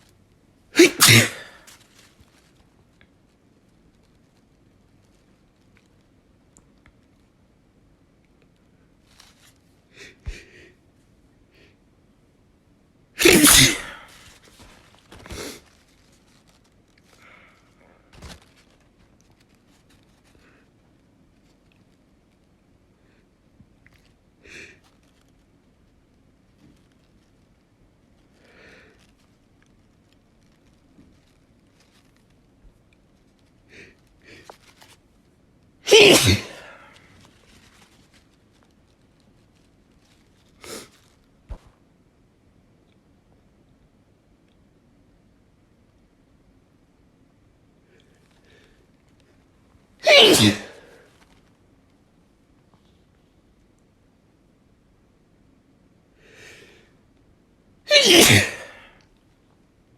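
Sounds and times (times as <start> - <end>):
person sneezing: 0.7 - 1.8, 13.2 - 14.4, 35.9 - 37.1, 50.0 - 51.1, 57.9 - 59.0
short bursts of breath: 0.8 - 1.7, 13.2 - 14.2, 35.9 - 37.0, 50.0 - 51.0, 57.9 - 58.9.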